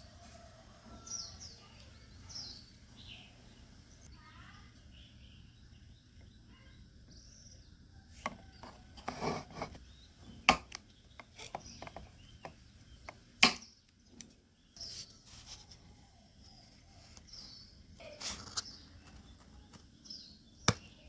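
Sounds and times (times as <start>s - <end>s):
objects tapping and rustling: 8.2s - 14.4s.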